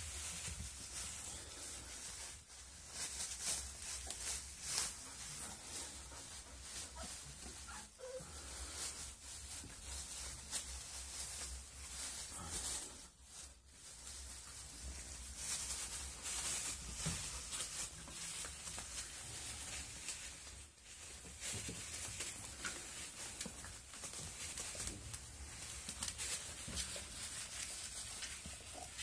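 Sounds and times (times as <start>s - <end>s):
puppies scuffling: 0.0s - 29.0s.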